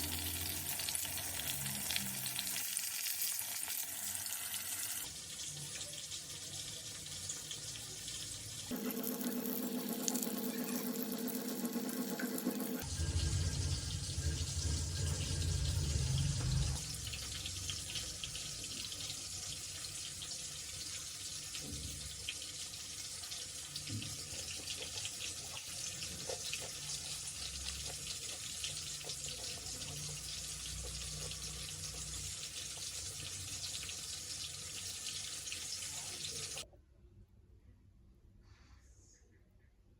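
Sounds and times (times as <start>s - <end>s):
prawns sizzling in hot oil: 0.0s - 10.8s, 12.8s - 36.6s
humming tone: 8.8s - 16.8s
low rumble: 12.8s - 16.9s.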